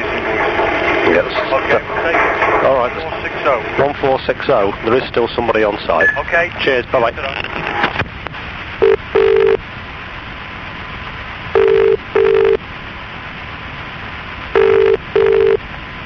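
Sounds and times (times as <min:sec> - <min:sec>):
phone line hiss: 0:08.8 - 0:09.6, 0:11.5 - 0:12.6, 0:14.5 - 0:15.6
telephone ringing tone: 0:08.8 - 0:09.6, 0:11.6 - 0:12.6, 0:14.6 - 0:15.6.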